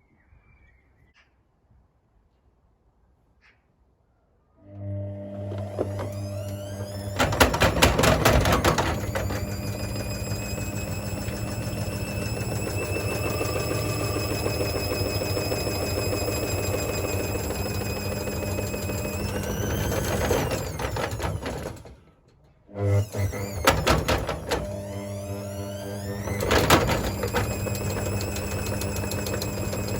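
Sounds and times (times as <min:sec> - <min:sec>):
washing machine motor whine: 0:04.6 - 0:22.0, 0:22.7 - 0:29.9
washing machine rattling clatter: 0:05.6 - 0:22.1, 0:22.8 - 0:29.9.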